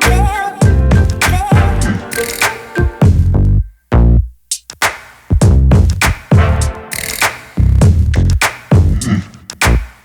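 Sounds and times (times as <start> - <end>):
drum hits: 0.0 - 3.4, 4.8 - 9.0
wavering melody: 0.1 - 3.2.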